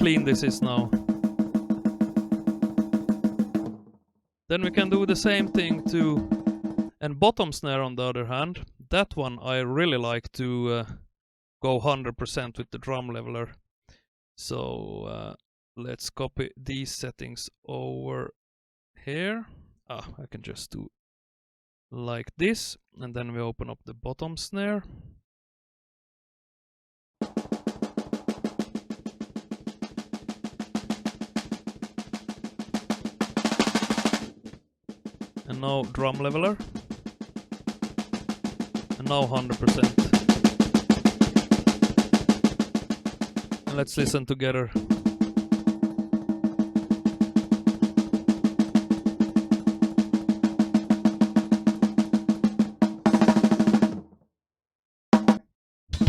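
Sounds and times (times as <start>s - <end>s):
fast snare drum hits: 0.0s - 3.8s, 4.6s - 7.0s, 27.2s - 44.2s, 44.8s - 54.0s, 55.2s - 55.4s.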